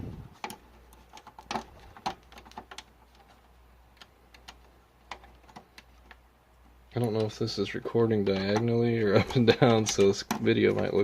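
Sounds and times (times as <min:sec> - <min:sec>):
plastic connectors clicking: 0:00.4 - 0:06.2.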